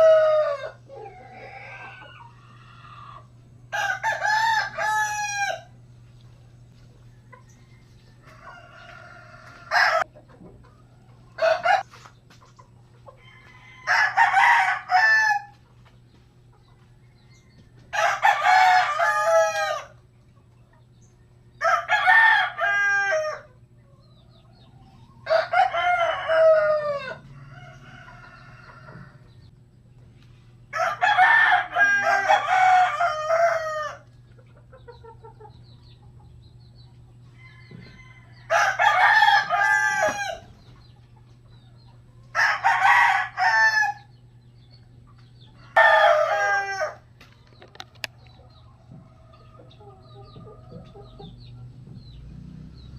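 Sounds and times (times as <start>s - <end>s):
rooster crowing: 0.0s - 5.7s, 7.1s - 10.1s, 11.4s - 11.9s, 13.2s - 15.5s, 17.2s - 20.0s, 21.6s - 23.5s, 25.2s - 29.3s, 30.7s - 34.0s, 37.3s - 40.5s, 42.3s - 44.1s, 45.6s - 47.1s.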